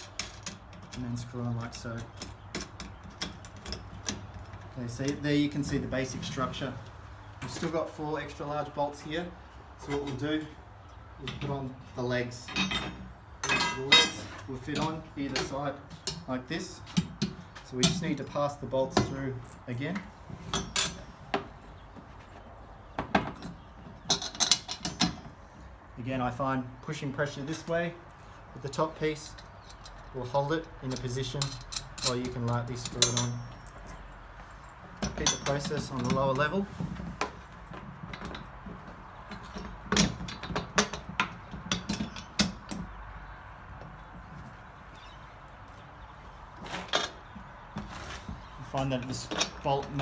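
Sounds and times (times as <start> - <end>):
metal parts knocking and clunking: 0.0 - 6.8, 11.2 - 22.1, 22.9 - 25.4, 29.2 - 44.5, 46.6 - 50.0.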